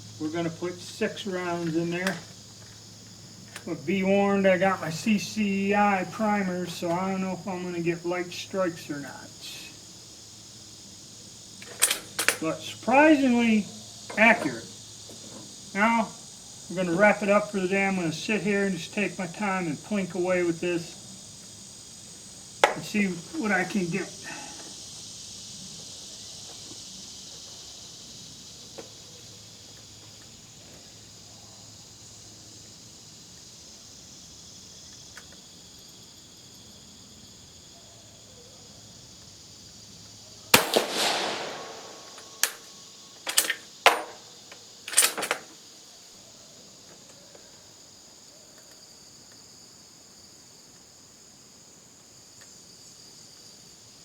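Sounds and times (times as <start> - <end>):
rifle shot with echo: 40.6 - 42.6.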